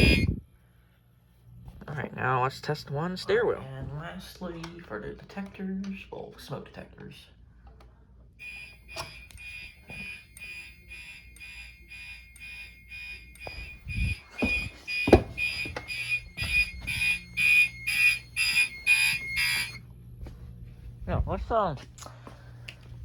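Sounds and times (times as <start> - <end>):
fire alarm horn pulsing: 0.0 - 0.4, 8.4 - 19.8
knocks: 14.4 - 16.6.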